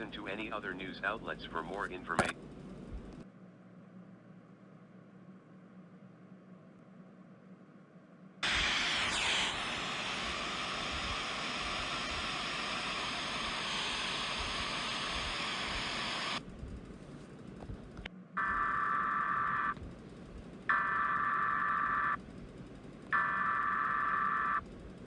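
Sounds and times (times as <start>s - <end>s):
faint low hum: 0.0s - 25.0s
static hiss: 8.4s - 16.4s, 17.7s - 20.0s, 20.6s - 22.2s, 23.1s - 24.6s
harsh electronic tone: 18.4s - 19.8s, 20.7s - 22.2s, 23.1s - 24.6s.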